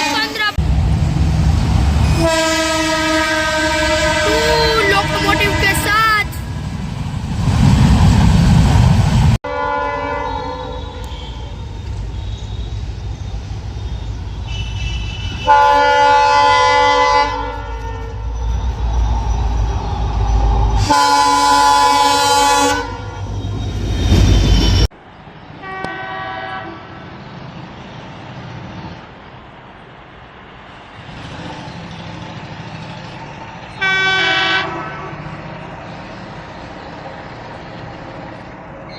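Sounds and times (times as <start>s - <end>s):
passing train rumble: 0.0s - 38.9s
locomotive air horn blast: 2.1s - 6.1s, 9.4s - 11.5s, 14.4s - 18.2s, 20.8s - 23.3s, 25.6s - 27.0s, 33.8s - 35.2s.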